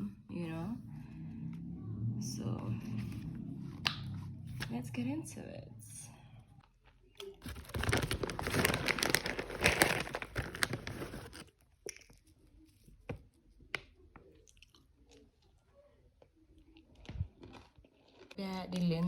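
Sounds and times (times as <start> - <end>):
crinkling tearing noise: 7.4 - 11.6.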